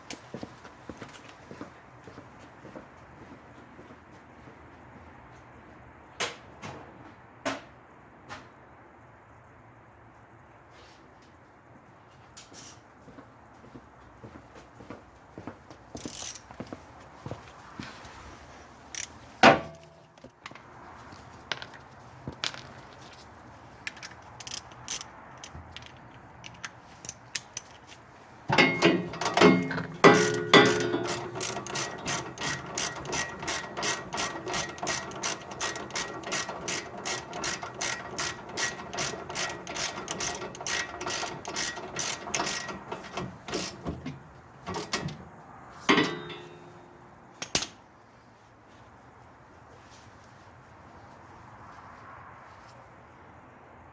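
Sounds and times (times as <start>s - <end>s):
ratchet wrench clicking: 16.0s - 16.4s, 23.9s - 27.8s, 28.5s - 44.0s, 44.7s - 45.0s.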